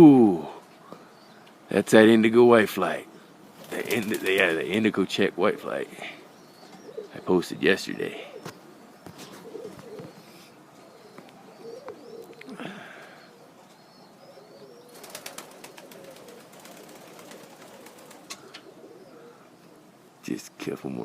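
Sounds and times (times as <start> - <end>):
pigeons cooing: 2.4 - 20.2
wings flapping: 3.6 - 4.8, 9.1 - 10.2, 14.9 - 18.7.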